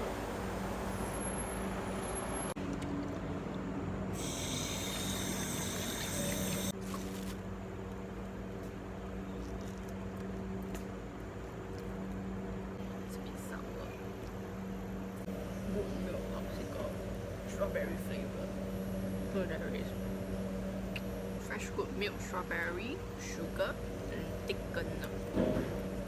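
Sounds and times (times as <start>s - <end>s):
tap water running: 4.2s - 6.7s
steady low hum: 7.4s - 26.0s.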